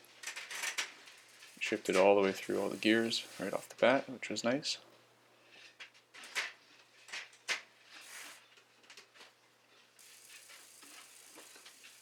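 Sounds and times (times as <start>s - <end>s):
bicycle clicks: 0.2s - 2.5s, 10.0s - 12.0s.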